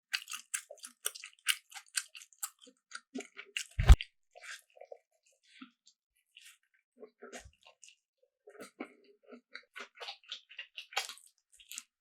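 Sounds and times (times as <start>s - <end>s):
crisp crunching and chewing: 0.1s - 3.8s, 8.5s - 12.0s.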